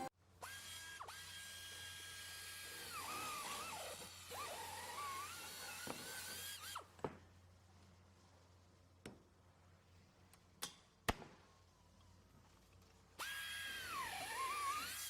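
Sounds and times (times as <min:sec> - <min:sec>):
electric power tool whining: 0:00.0 - 0:06.9, 0:13.2 - 0:15.0.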